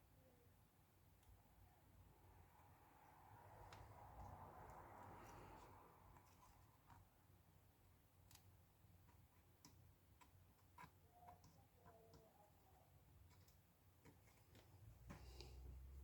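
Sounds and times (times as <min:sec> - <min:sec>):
small clicks and taps: 0:08.2 - 0:12.3, 0:13.2 - 0:15.6.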